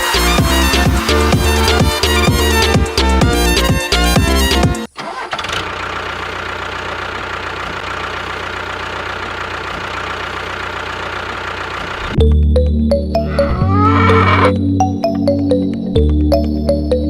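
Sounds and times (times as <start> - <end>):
music: 0.0 - 4.9, 12.2 - 17.0.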